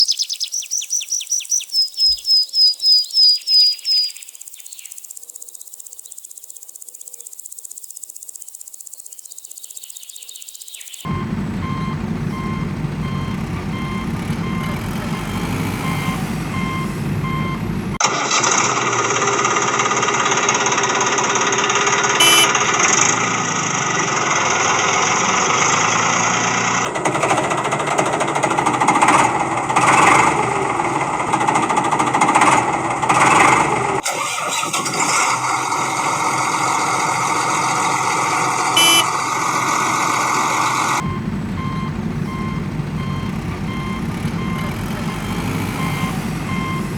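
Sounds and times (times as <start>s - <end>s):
reversing alarm beeping: 11.1s - 18.0s, 22.2s - 22.6s, 38.4s - 46.9s
heavy vehicle engine running: 11.1s - 46.9s.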